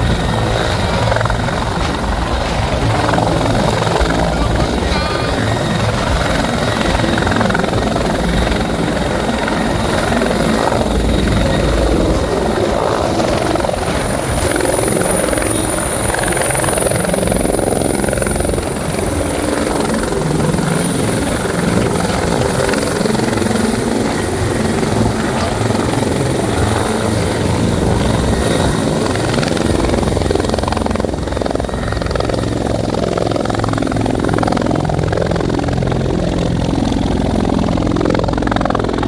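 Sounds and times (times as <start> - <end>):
thin high whine: 0.0 - 29.4
helicopter engine and rotor: 0.0 - 39.0.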